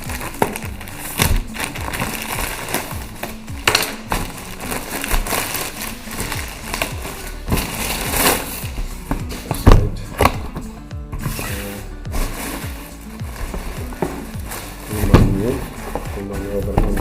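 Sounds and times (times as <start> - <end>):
packaging tearing and crinkling: 0.0 - 9.4, 11.3 - 17.0.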